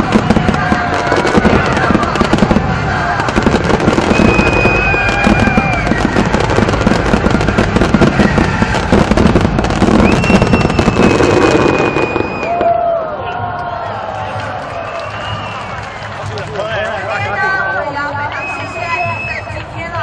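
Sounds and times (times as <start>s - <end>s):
fireworks crackling bangs: 0.0s - 13.0s
long high firework whistles: 0.0s - 13.0s, 14.7s - 15.8s.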